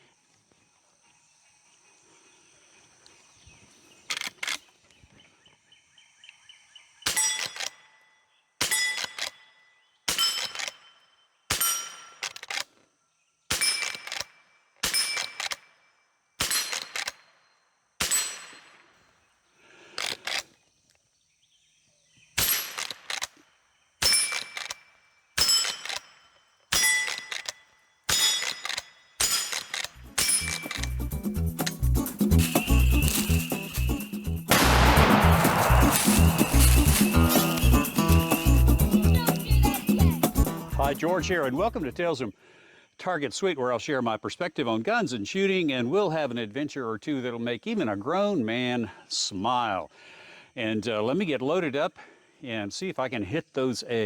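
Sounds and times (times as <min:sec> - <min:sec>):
metallic ring of steel targets: 0:08.6 - 0:09.4, 0:10.1 - 0:12.2, 0:18.0 - 0:18.8, 0:25.4 - 0:27.4, 0:28.1 - 0:31.0, 0:32.4 - 0:38.5
rifle shots: 0:16.4 - 0:17.2, 0:18.0 - 0:18.8, 0:22.4 - 0:23.3, 0:34.5 - 0:38.5.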